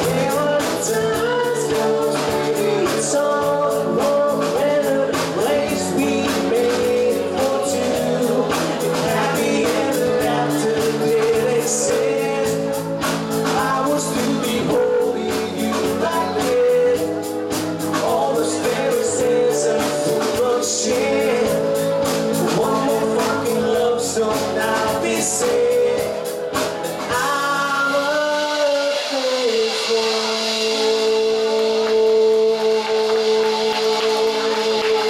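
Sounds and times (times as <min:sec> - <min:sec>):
drums: 0:00.0 - 0:35.0
lead singer: 0:00.0 - 0:35.0
pop-rock band playing: 0:00.0 - 0:35.0.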